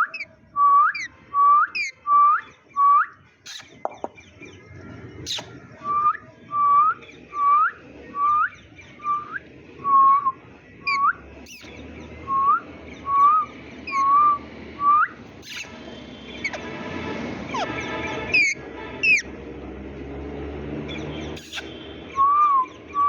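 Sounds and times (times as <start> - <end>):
parakeet whistling: 0.0 - 3.7, 5.3 - 11.7, 12.3 - 16.7, 17.5 - 19.3, 21.4 - 23.0.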